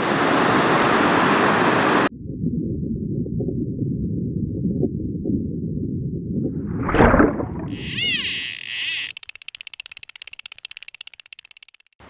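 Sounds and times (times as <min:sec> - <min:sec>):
rapid stuttering buzz: 0:07.7 - 0:12.0.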